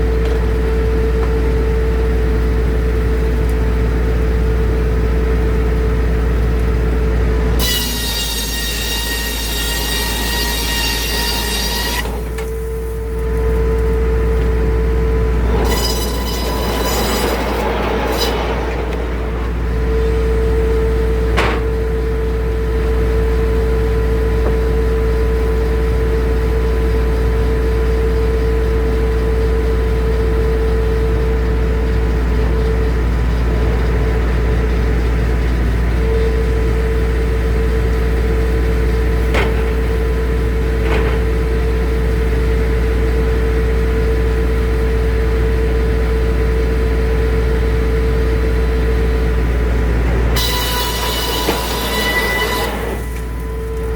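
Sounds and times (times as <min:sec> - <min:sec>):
circular saw drone and whine: 0:05.4 - 0:34.8, 0:46.3 - 0:53.9
harsh burst of saw noise: 0:07.6 - 0:12.4, 0:15.4 - 0:20.0, 0:50.4 - 0:53.6.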